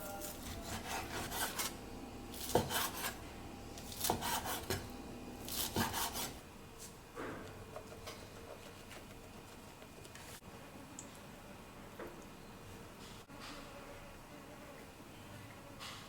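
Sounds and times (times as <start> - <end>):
rasping food preparation scraping: 0.0 - 6.4.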